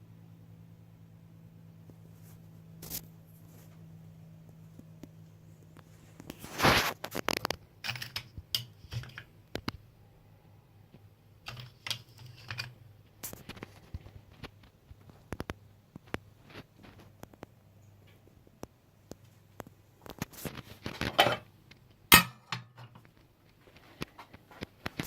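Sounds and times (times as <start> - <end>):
low steady hum: 0.0 - 25.0
objects clattering: 6.3 - 9.3, 11.5 - 15.3, 20.0 - 21.5
small objects clicking and knocking: 6.4 - 9.8, 11.4 - 17.5.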